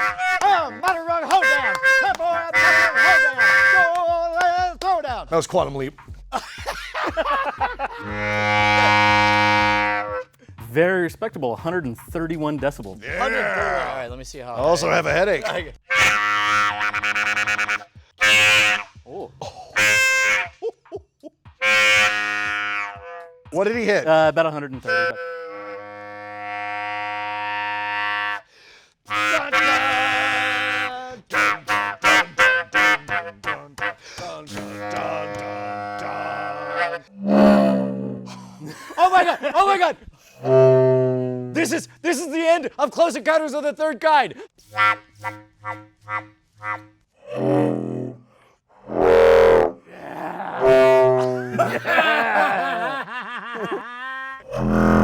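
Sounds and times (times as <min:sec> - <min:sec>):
large horn blasts: 0:00.0 - 0:04.0, 0:08.0 - 0:10.3, 0:15.9 - 0:19.0, 0:24.9 - 0:27.7, 0:29.1 - 0:38.2, 0:40.4 - 0:41.9, 0:44.6 - 0:47.9, 0:48.9 - 0:49.7, 0:50.6 - 0:51.7, 0:54.5 - 0:55.0.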